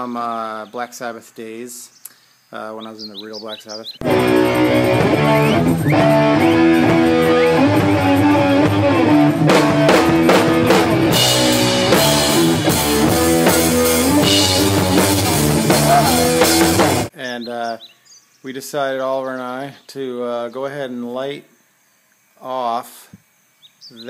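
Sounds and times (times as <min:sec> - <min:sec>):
drum kit: 0:04.0 - 0:17.1
electric guitar: 0:04.0 - 0:17.1.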